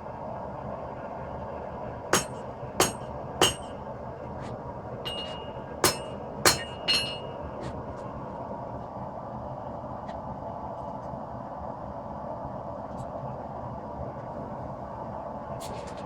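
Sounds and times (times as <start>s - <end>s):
steady background noise: 2.1s - 9.6s
hammer striking steel on anvil: 2.2s - 3.8s, 5.1s - 7.5s.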